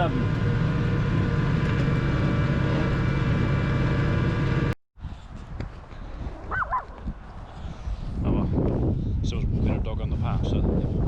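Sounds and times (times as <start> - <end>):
vehicle engine running: 0.0 - 4.8.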